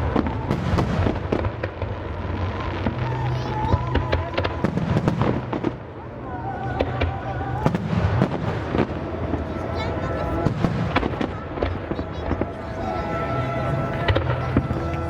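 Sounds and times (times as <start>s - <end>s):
fireworks bangs and crackles: 0.0s - 15.0s.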